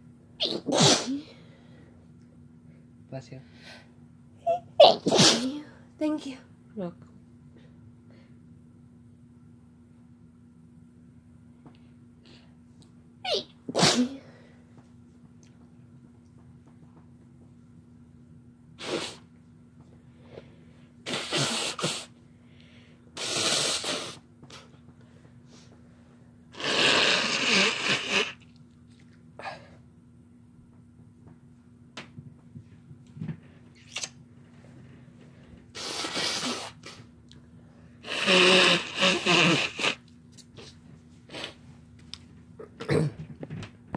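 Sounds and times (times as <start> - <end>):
people sneezing: 0.4 - 1.4, 4.8 - 5.8, 13.7 - 14.4, 18.8 - 19.3, 21.0 - 22.2, 23.2 - 24.7, 26.6 - 28.4, 35.8 - 37.1, 38.0 - 40.0.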